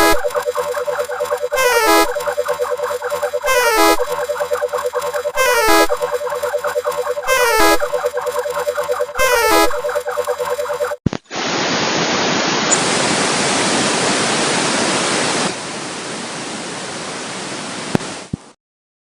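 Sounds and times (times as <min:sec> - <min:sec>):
repeating electronic tone pattern: 0:00.0 - 0:11.0
static hiss: 0:00.0 - 0:18.6.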